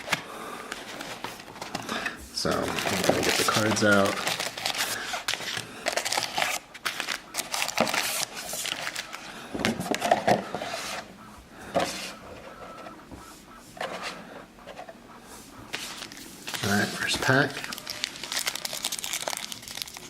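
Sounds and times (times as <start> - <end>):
foil wrappers crinkling: 0.0 - 10.2, 15.7 - 20.0.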